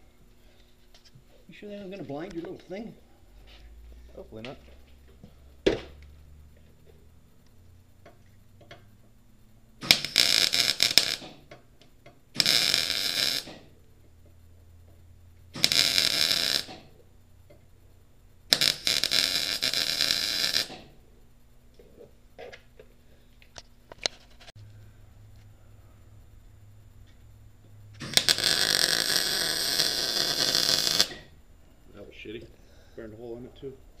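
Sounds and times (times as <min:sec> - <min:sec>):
welder arc crackling: 0:00.9 - 0:03.0, 0:04.1 - 0:21.8, 0:26.8 - 0:31.4.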